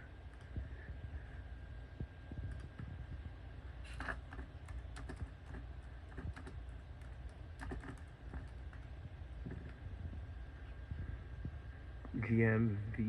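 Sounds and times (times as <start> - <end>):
steady low hum: 0.0 - 13.0
keyboard typing: 2.3 - 3.1, 3.9 - 9.8.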